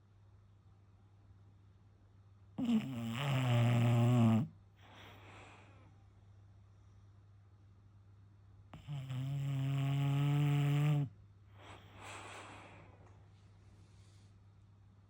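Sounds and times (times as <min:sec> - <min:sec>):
dog snoring: 0:02.6 - 0:04.5, 0:08.7 - 0:12.8
soft breathy breath: 0:04.8 - 0:07.2, 0:11.5 - 0:14.7.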